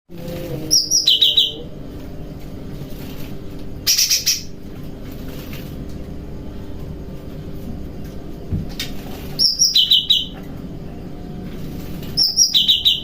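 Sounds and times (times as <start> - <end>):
steady low hum: 0.1 - 13.0
songbird chirping: 9.4 - 10.4, 12.1 - 13.0.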